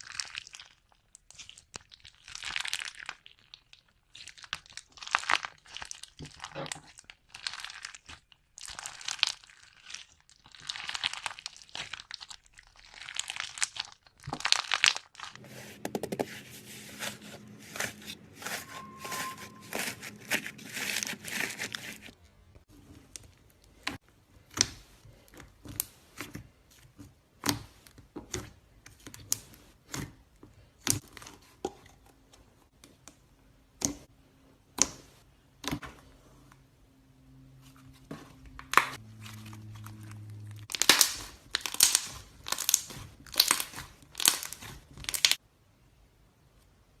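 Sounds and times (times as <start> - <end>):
slime squished by hand: 38.6 - 45.4.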